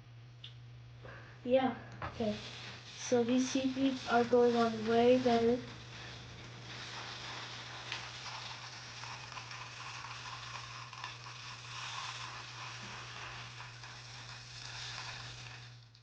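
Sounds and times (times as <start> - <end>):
low steady hum: 0.0 - 16.0
beads rustling in spinning bowl: 2.2 - 16.0
small bead clicks: 3.4 - 16.0.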